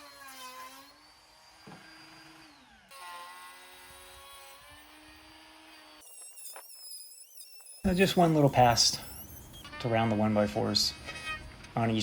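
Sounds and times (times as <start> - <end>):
wood router running: 0.9 - 6.9.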